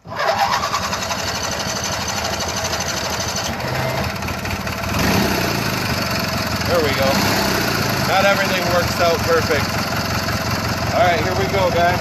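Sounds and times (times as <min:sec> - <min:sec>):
boat motor running hard: 0:02.5 - 0:09.7.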